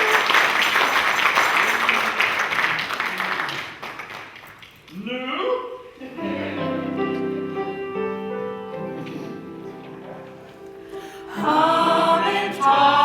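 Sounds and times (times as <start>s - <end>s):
group of voices singing: 6.0s - 7.4s, 11.2s - 13.0s.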